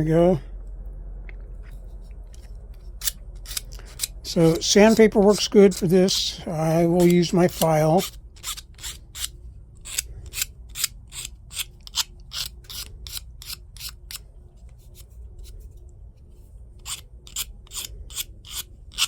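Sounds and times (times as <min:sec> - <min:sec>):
hand file rasping on plastic: 0:16.8 - 0:19.0.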